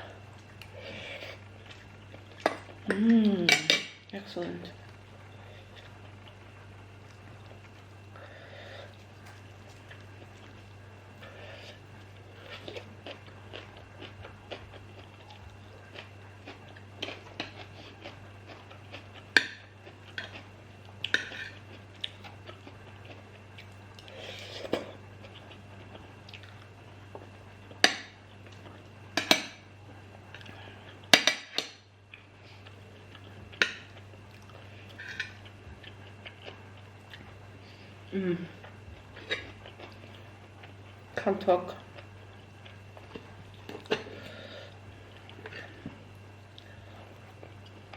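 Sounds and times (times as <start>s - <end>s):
steady low hum: 0.0s - 47.9s
chewing and mouth noises: 11.5s - 28.9s, 32.1s - 37.5s, 38.5s - 41.0s.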